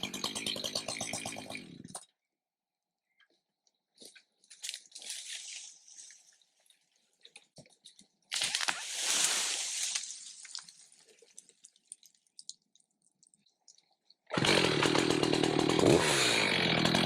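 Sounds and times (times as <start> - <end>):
chainsaw running at high speed: 0.0 - 1.9, 14.3 - 17.0
rustling noise: 8.4 - 10.9.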